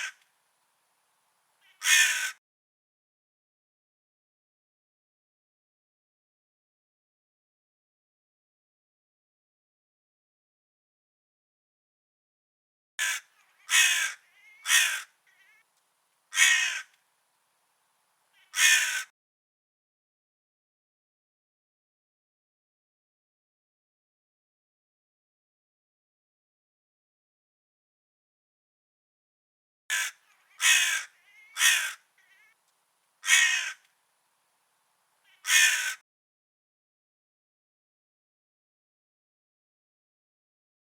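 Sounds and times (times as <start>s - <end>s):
crow cawing: 1.6s - 2.4s, 13.0s - 15.6s, 16.3s - 17.0s, 18.4s - 19.1s, 29.9s - 32.6s, 33.2s - 33.9s, 35.3s - 36.0s
faint soft calls: 30.0s - 32.6s.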